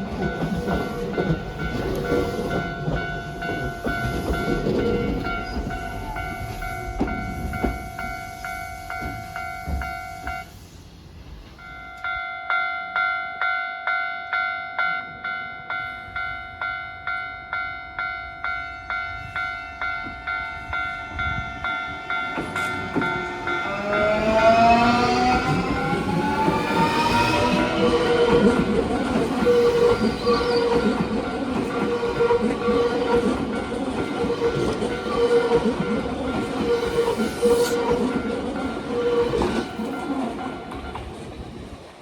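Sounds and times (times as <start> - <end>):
level crossing warning bell ringing: 0.0 - 10.6, 11.6 - 41.2
electric train motor whine: 20.2 - 30.9.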